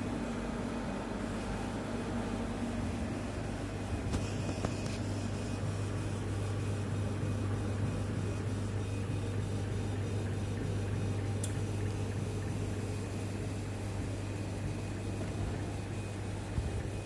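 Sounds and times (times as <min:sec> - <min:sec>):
low mains hum: 0:00.0 - 0:17.0.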